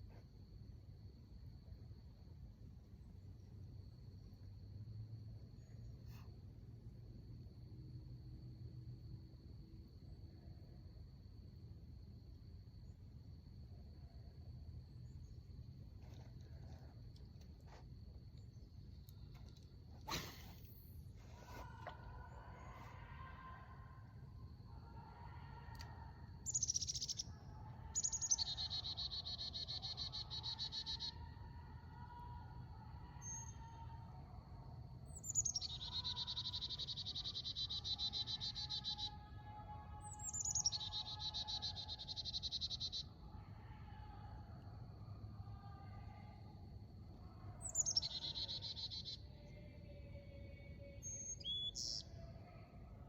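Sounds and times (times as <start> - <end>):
songbird singing: 14.8 - 33.9, 35.0 - 43.2, 47.6 - 52.7.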